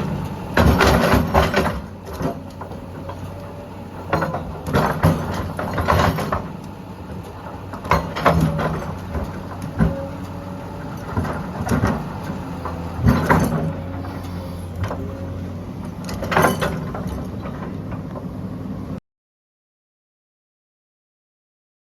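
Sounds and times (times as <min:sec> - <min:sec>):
excavator diesel engine running: 0:00.0 - 0:19.0
bucket clanking and scraping: 0:04.2 - 0:06.6, 0:12.7 - 0:15.2.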